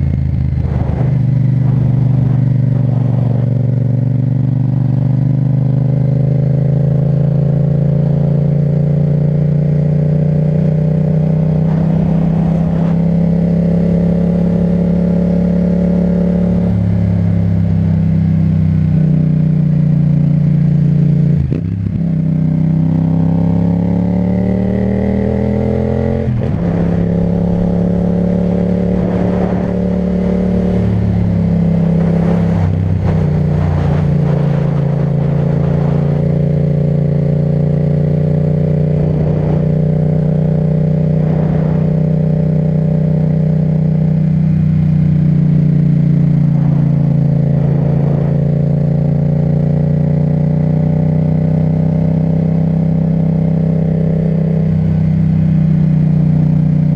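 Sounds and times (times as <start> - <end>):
motorcycle engine revving: 0.0 - 56.9.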